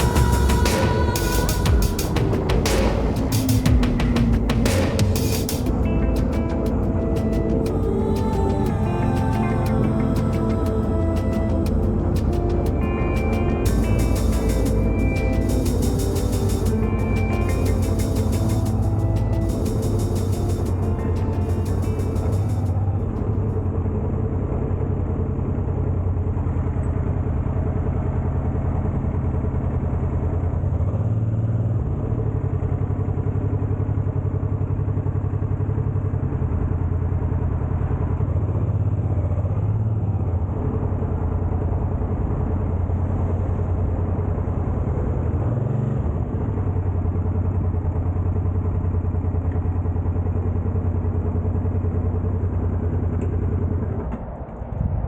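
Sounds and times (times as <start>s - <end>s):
motorcycle engine running: 0.0s - 23.6s.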